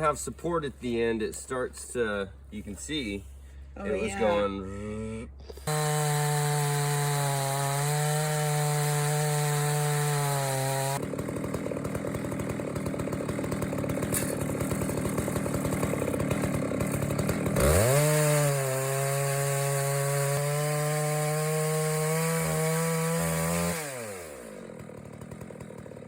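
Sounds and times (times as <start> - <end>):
chainsaw ripping a log: 5.4 - 26.0.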